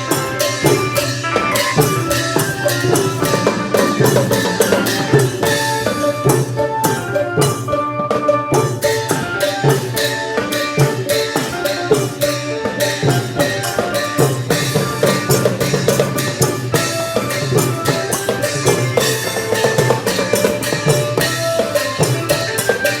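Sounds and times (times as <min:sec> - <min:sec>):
held pitched notes: 0:00.0 - 0:09.4
music with fast percussion beat: 0:00.0 - 0:23.0.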